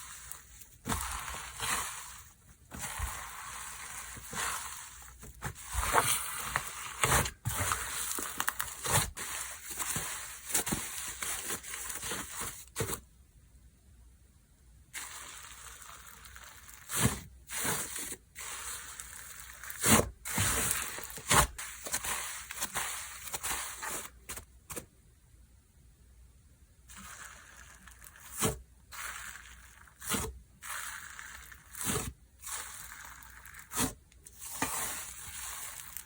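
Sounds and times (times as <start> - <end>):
hands squishing slime: 0.0 - 12.9.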